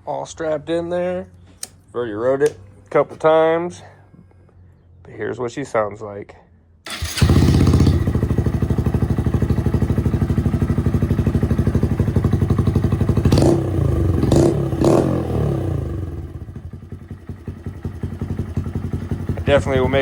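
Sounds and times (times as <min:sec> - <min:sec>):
motorcycle engine idling and revving: 0:06.9 - 0:20.0.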